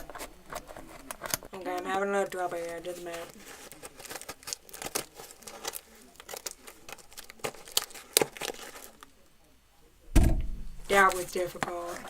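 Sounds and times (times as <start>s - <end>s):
cardboard tearing and crinkling: 0.0s - 9.1s.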